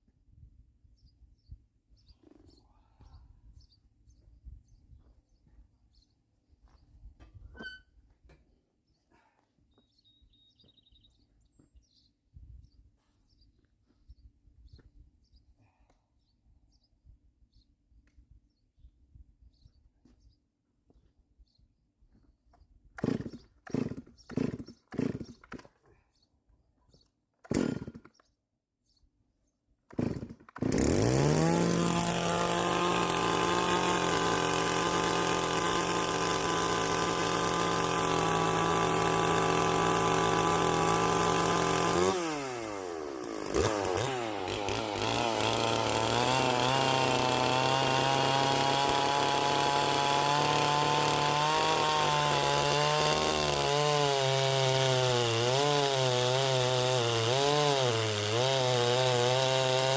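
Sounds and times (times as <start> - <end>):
chainsaw running at high revs: 23.0 - 25.6, 27.5 - 28.2, 29.9 - 59.9
chainsaw cutting into log: 23.0 - 25.7, 27.4 - 28.2, 29.9 - 59.9.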